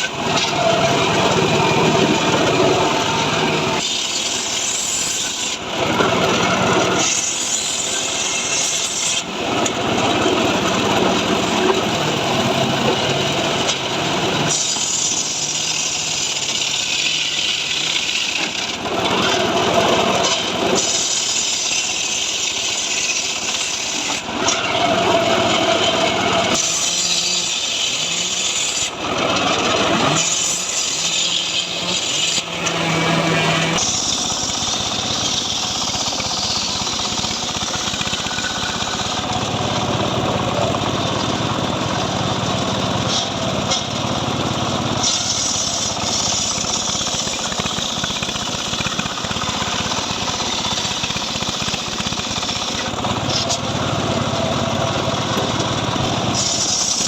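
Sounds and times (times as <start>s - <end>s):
chainsaw cutting wood: 0.0s - 57.0s.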